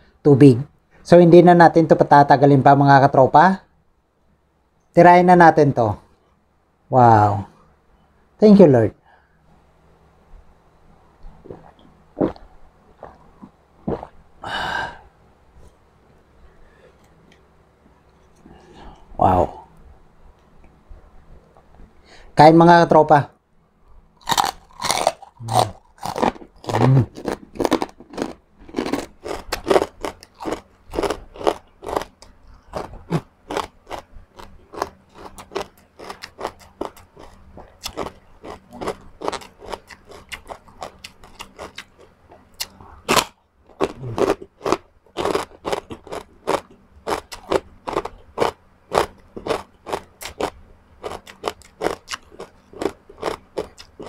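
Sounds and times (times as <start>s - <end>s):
crunching and chewing crispy food: 24.2s - 54.0s.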